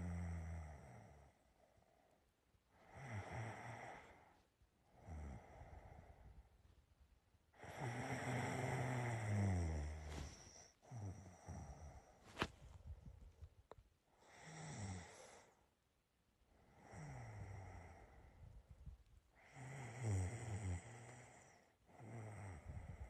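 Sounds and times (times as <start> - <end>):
person snoring: 5.0 - 6.2, 7.6 - 12.2, 14.2 - 15.6, 16.7 - 18.3, 19.4 - 23.0.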